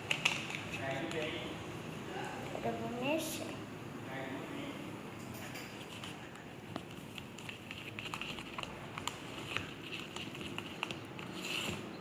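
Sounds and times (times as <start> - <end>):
slime being stirred with clicks: 5.8 - 12.0.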